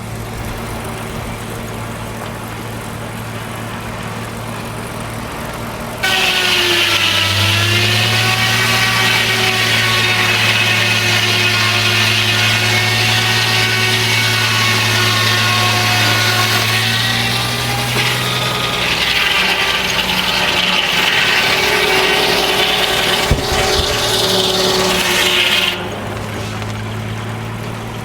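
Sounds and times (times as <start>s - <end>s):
circular saw cutting log: 0.0s - 28.0s
sharp knock: 23.2s - 24.5s.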